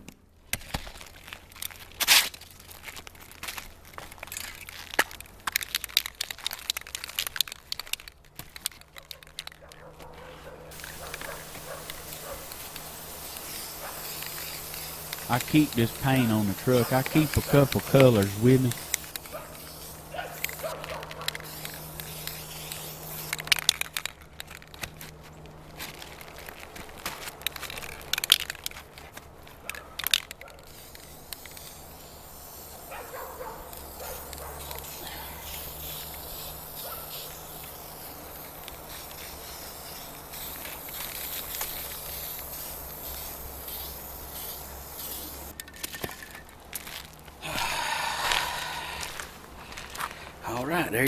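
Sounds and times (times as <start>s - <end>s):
clicks and scrapes on shingles: 0.5s - 22.4s
aerosol spray paint hissing: 10.7s - 24.9s, 29.8s - 45.6s, 46.9s - 50.0s.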